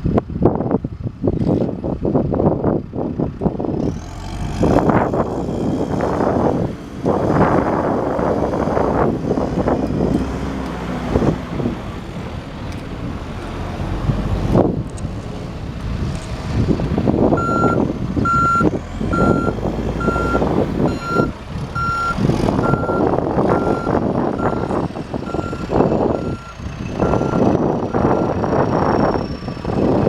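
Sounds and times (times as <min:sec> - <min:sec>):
diesel engine running under load: 0:00.0 - 0:30.0
reverse alarm beeping: 0:17.4 - 0:24.7, 0:25.3 - 0:27.4.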